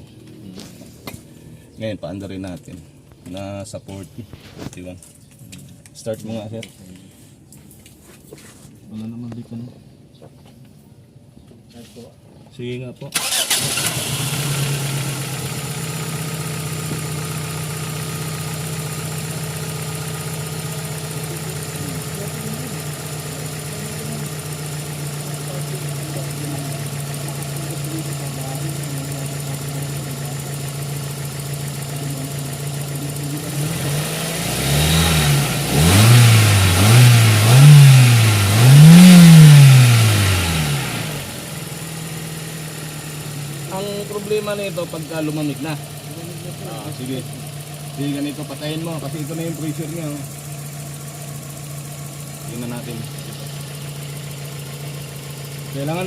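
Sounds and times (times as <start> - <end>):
car engine idling and revving: 0.0 - 7.9, 13.1 - 56.0.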